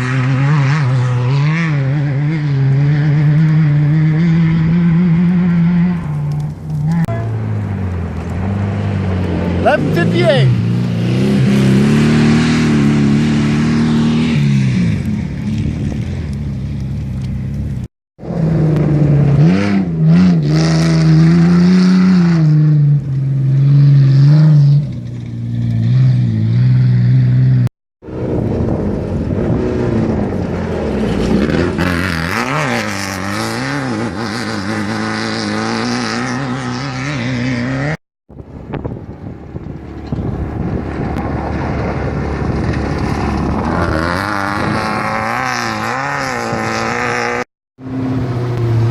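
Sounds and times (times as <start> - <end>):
race vehicle engines revving: 0.0 - 48.9.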